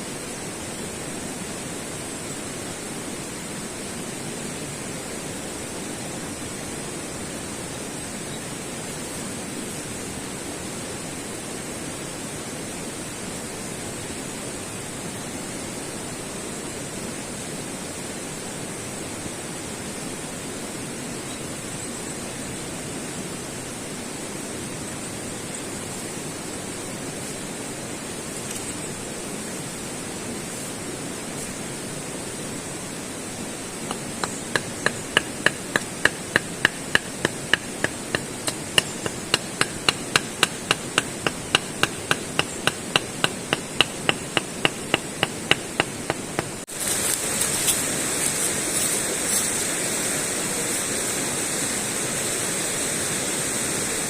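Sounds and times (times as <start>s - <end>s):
sharp knocks: 33.9s - 46.6s.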